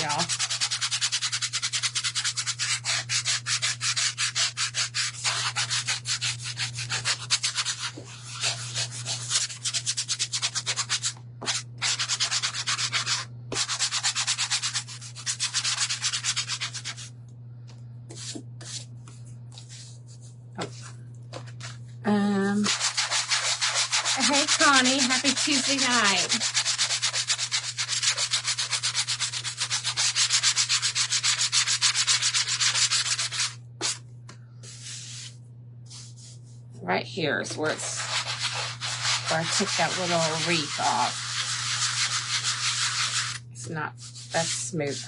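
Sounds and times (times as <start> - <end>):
sandpaper strokes on wood: 0.0 - 17.0, 22.6 - 33.6, 37.7 - 43.4, 44.0 - 45.0
steady low hum: 0.0 - 45.0.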